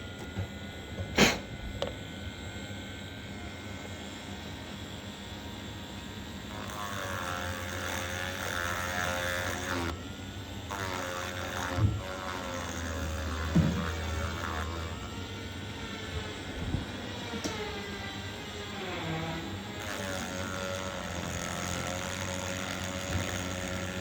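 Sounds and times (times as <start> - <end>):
hot air blowing: 1.0 - 1.8.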